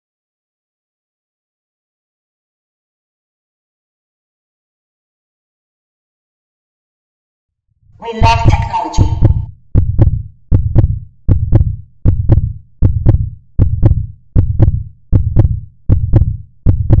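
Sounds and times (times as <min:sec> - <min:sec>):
deep thumping beat with clicks: 0:08.2 - 0:17.0.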